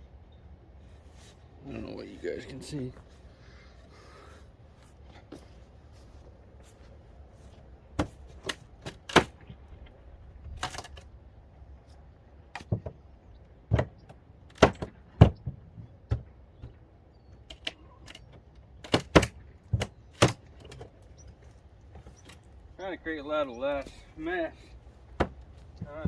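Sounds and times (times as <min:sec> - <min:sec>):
wooden boards cracking: 0:08.0 - 0:09.4, 0:13.7 - 0:16.3, 0:18.8 - 0:21.0.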